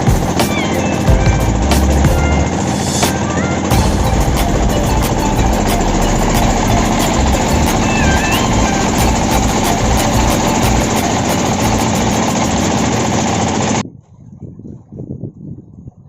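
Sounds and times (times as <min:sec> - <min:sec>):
boat engine running: 0:00.0 - 0:13.8
faint low rumbling: 0:01.1 - 0:13.8.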